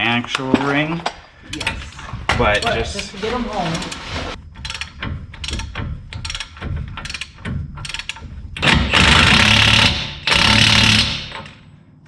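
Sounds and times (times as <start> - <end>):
impact wrench running: 3.7 - 11.6
hand ratchet wrench clicking: 4.6 - 11.6.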